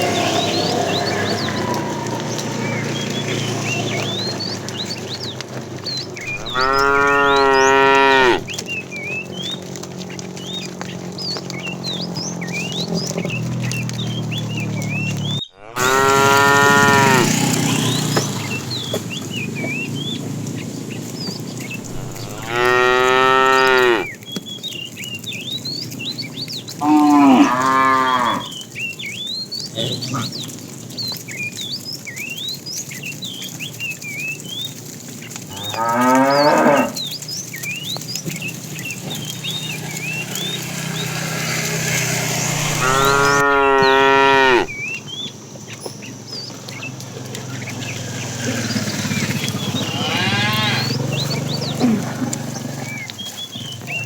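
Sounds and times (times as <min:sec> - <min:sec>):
cattle mooing: 0:00.0 - 0:04.4, 0:06.3 - 0:08.6, 0:15.5 - 0:17.6, 0:21.8 - 0:24.1, 0:26.8 - 0:28.6, 0:35.5 - 0:37.1, 0:42.1 - 0:44.8, 0:49.8 - 0:52.9
small birds chirping: 0:00.0 - 0:54.0.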